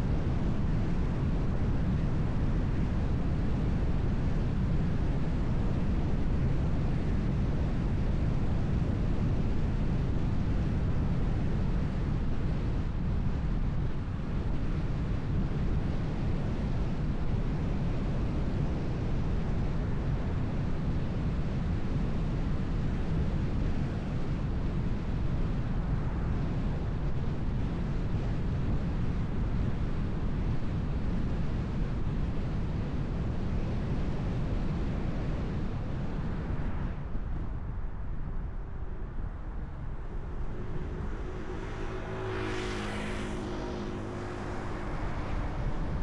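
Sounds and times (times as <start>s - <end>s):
wind noise: 0.0s - 46.0s
tyres rumbling on road: 38.5s - 46.0s.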